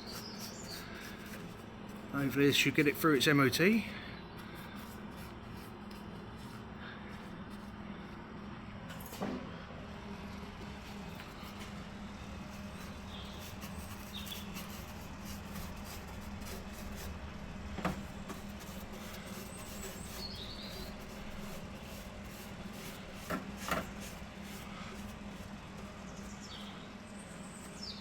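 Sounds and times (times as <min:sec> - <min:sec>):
low background hum: 0:00.0 - 0:28.0
faint bird chirps: 0:26.1 - 0:28.0.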